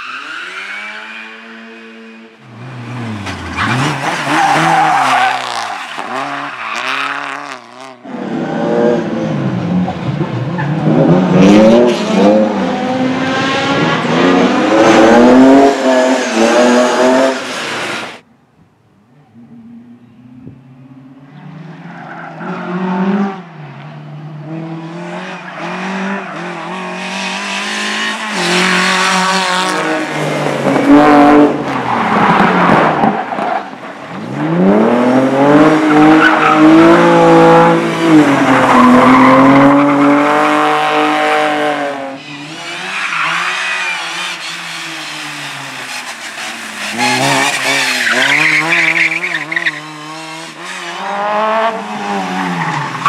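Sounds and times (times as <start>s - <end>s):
tyre squeal: 42.2s - 50.0s.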